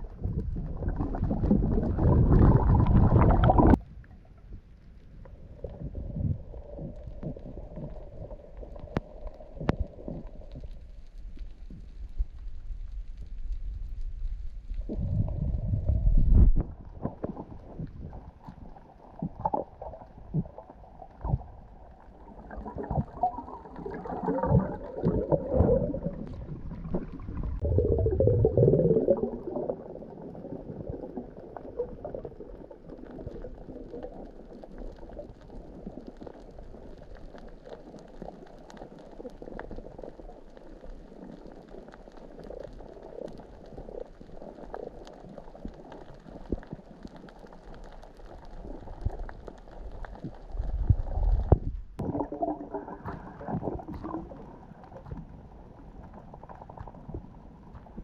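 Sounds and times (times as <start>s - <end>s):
low wash of water: 0.0s - 36.0s, 48.6s - 58.0s
underwater bubbling and gurgling: 0.0s - 58.0s.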